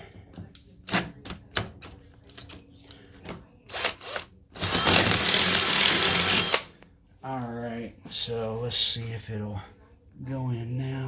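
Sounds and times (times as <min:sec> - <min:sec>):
power drill drilling metal: 0:03.7 - 0:06.7.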